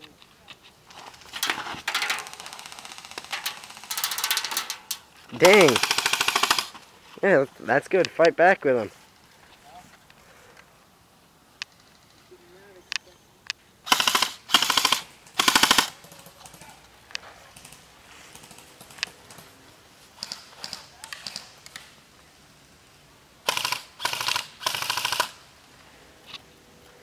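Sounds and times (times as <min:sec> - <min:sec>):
airsoft gun bursts: 0:01.8 - 0:04.8, 0:05.4 - 0:06.8, 0:13.8 - 0:16.1, 0:23.4 - 0:25.4.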